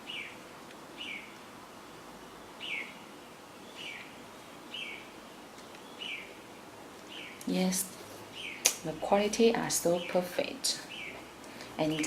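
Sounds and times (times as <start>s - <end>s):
bird chirping: 0.0s - 1.4s, 2.4s - 5.2s, 5.8s - 6.4s, 7.0s - 7.7s, 8.3s - 8.7s, 9.8s - 11.3s.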